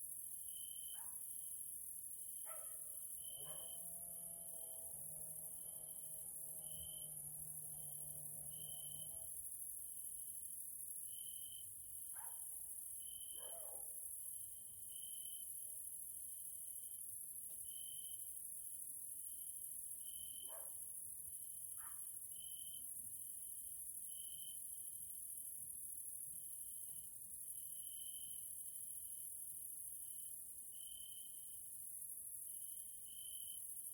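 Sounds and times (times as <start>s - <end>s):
lower insect trill: 2.2s - 9.7s, 30.0s - 33.9s.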